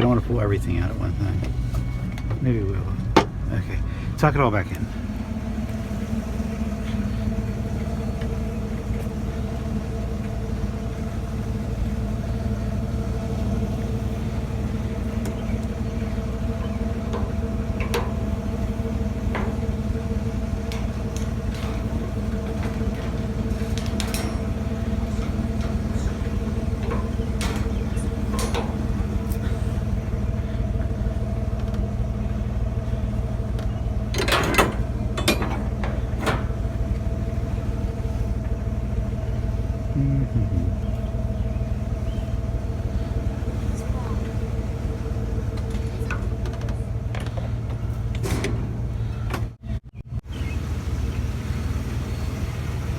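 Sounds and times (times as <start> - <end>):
car engine humming: 0.0 - 52.9
light clicks and rattles: 12.6 - 39.3, 42.0 - 49.6.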